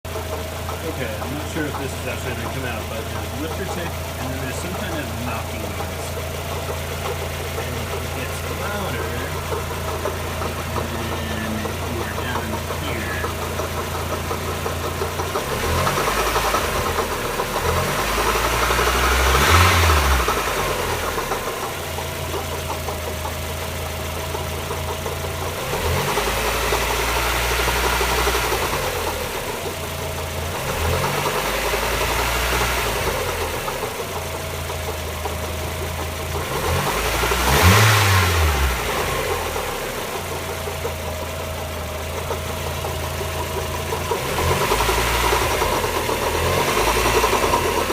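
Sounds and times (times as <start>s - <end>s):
car engine idling and revving: 0.0s - 47.9s
engine knocking: 0.0s - 47.9s.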